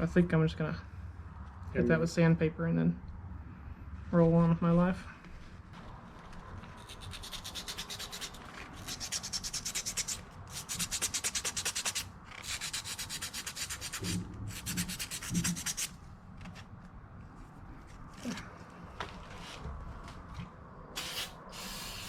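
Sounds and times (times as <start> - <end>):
sandpaper rubbing on metal: 6.8 - 15.9, 21.0 - 22.0.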